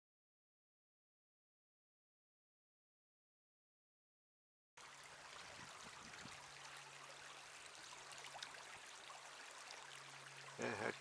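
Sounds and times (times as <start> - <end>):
creek flowing: 4.8 - 11.0.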